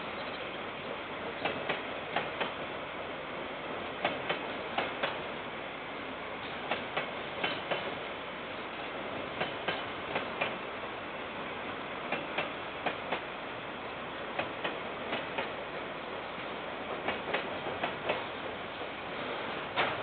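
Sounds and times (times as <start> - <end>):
train running noise: 0.0 - 20.0
train wheels clacking over rail joint: 1.4 - 2.6, 4.0 - 5.3, 6.5 - 8.0, 9.3 - 10.6, 12.1 - 13.3, 14.4 - 15.6, 16.9 - 20.0.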